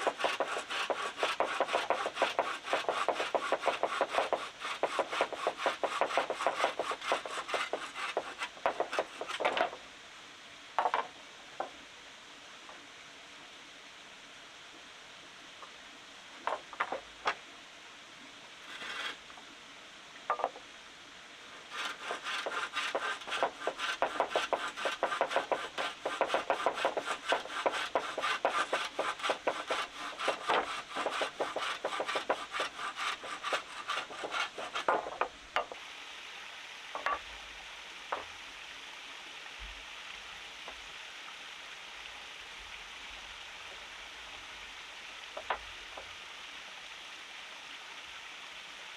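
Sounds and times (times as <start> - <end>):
rasping strokes against wood: 0.0 - 9.8, 18.7 - 19.2, 21.7 - 35.7
steady hiss: 0.0 - 48.9.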